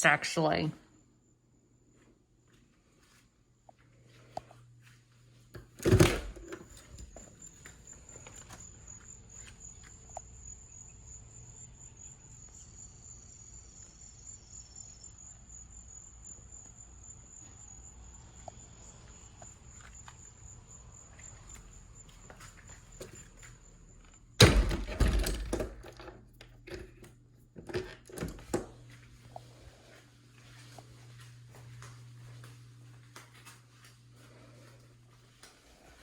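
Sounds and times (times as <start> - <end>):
high-pitched insect trill: 7.4 - 23.7.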